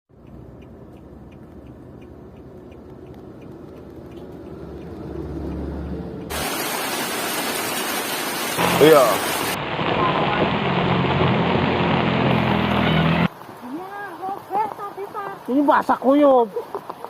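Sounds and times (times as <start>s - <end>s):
faint regular ticks: 0.1s - 6.3s
heavy rain: 6.2s - 17.0s
low rumble: 8.6s - 13.3s.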